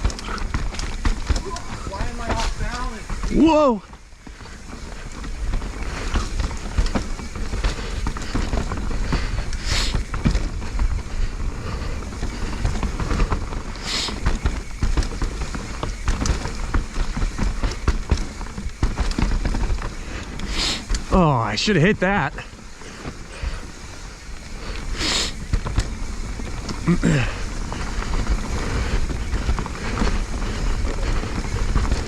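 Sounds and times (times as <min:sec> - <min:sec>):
bike rattling and knocking: 0:00.0 - 0:32.0
bike tyres rumbling over dirt: 0:00.0 - 0:32.0
short hisses: 0:24.8 - 0:25.4.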